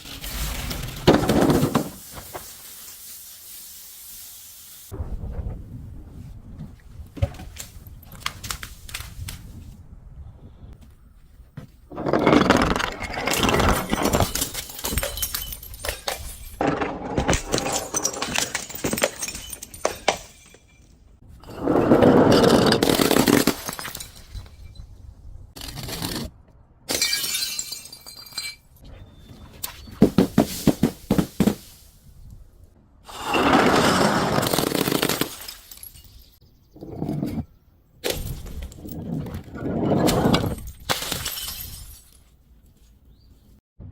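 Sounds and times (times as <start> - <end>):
glass crushing and shattering: 12.0 - 21.6, 22.2 - 24.9, 26.9 - 28.8, 33.6 - 39.0, 40.0 - 42.3.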